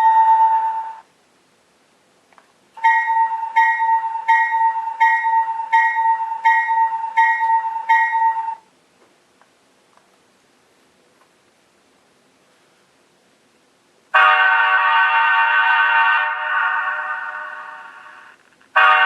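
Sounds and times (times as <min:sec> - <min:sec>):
locomotive bell ringing: 0:00.0 - 0:01.0, 0:02.8 - 0:08.6.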